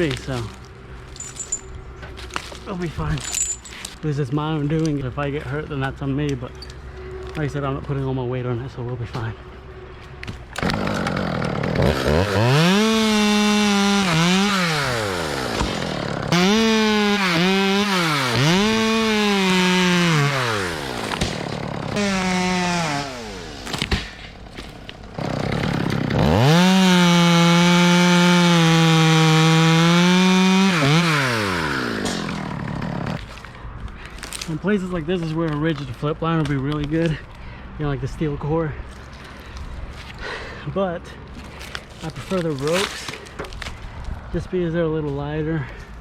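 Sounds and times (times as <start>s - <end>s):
chainsaw revving: 10.6s - 23.9s, 24.5s - 33.2s.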